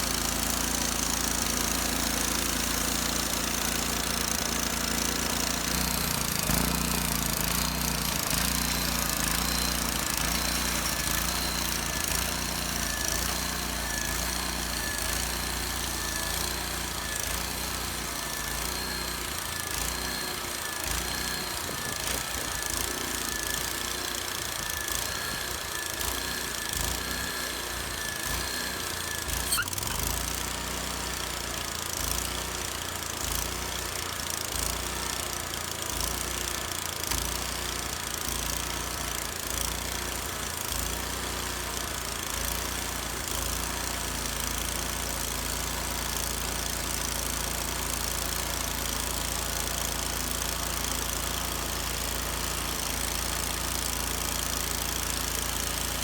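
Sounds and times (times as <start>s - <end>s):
thin high whine: 24.5s - 30.3s.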